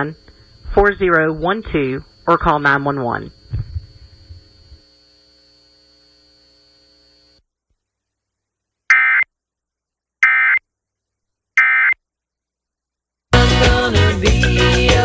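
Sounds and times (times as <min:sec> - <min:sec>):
faint steady hum: 0:00.0 - 0:15.0
screechy digital data bursts: 0:08.9 - 0:09.3, 0:10.2 - 0:10.6, 0:11.6 - 0:12.0.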